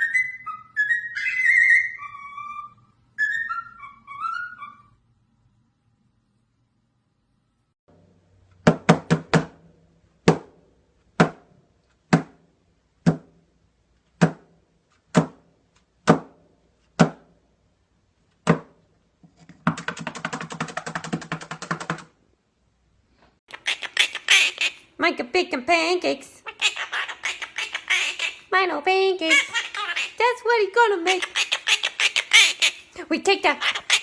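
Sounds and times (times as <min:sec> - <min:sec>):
knocks on a hard surface: 0:08.6 - 0:09.5.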